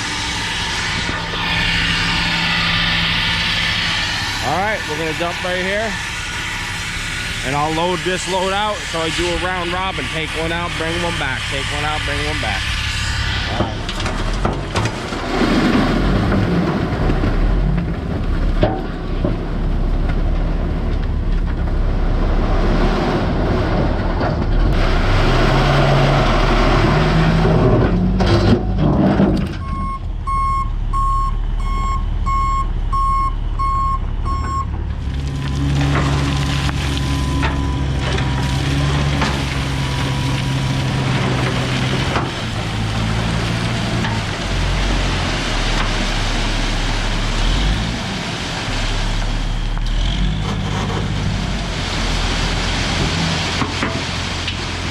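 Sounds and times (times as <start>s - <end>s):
heavy diesel machine engine revving: 19.2s - 29.2s, 30.3s - 54.9s
backup alarm beeping: 29.6s - 34.7s, 36.9s - 38.6s.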